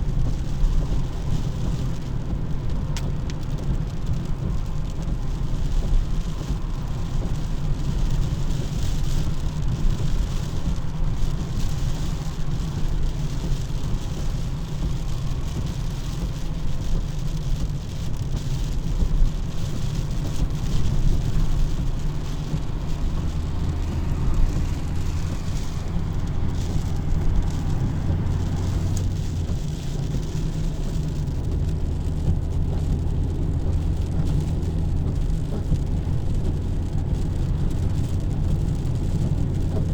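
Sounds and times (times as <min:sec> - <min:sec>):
car engine and tyres rumbling: 0:00.0 - 0:39.9
rain hissing: 0:00.0 - 0:39.9.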